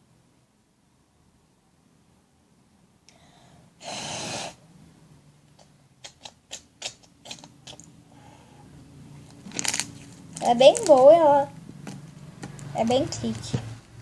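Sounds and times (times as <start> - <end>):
puff of breath: 3.1 - 4.6.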